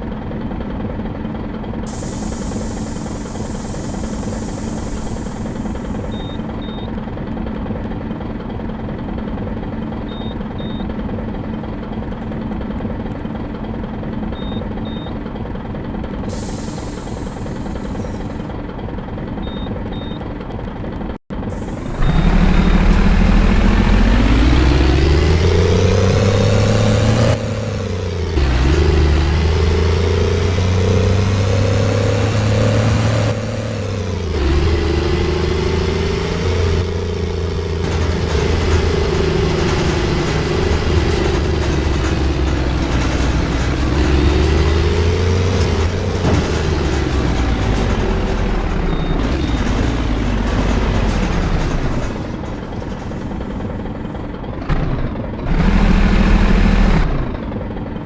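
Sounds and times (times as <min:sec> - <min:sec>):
bus diesel engine: 0:00.0 - 0:58.0.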